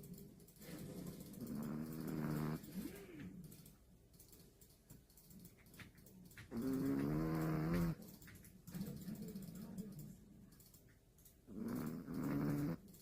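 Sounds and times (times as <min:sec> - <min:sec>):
dog snoring: 0:00.6 - 0:03.2, 0:06.5 - 0:08.0, 0:11.5 - 0:12.8.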